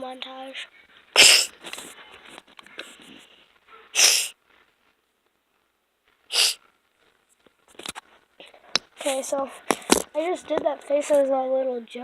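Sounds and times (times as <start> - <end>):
person sniffling: 1.1 - 1.8, 2.8 - 4.4, 6.3 - 6.6.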